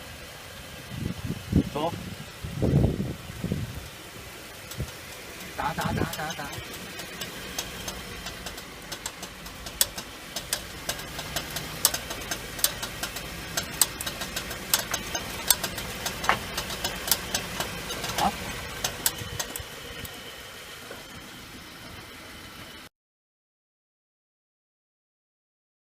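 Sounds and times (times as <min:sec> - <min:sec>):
engine and road hum: 0:00.0 - 0:22.9
car wheels clicking: 0:03.9 - 0:22.8.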